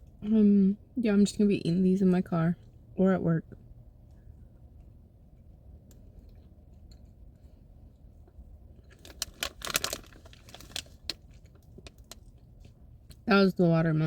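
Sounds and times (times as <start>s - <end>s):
low hum: 0.0s - 14.0s
plastic bag crinkling: 8.8s - 12.4s.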